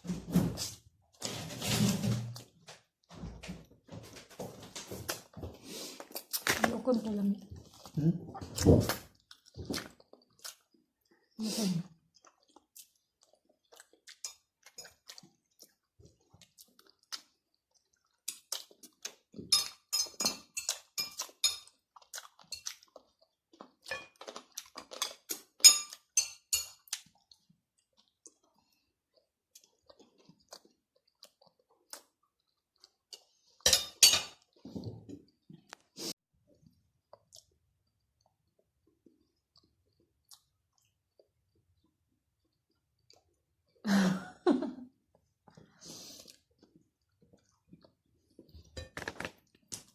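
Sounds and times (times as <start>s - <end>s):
food chewed and crunched: 5.0s - 43.8s, 45.0s - 49.9s
dishes clinking: 33.6s - 34.4s.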